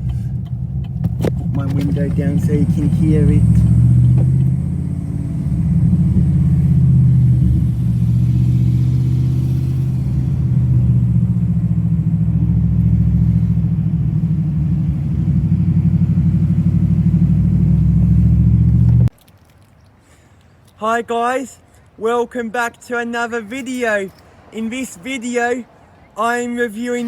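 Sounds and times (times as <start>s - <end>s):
car engine and exhaust rumbling: 0.0s - 19.2s.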